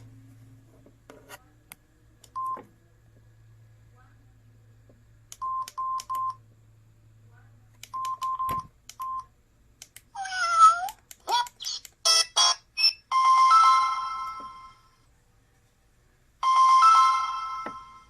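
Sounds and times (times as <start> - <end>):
phone keypad beeps: 2.4 - 2.6, 5.4 - 6.4, 7.9 - 9.3.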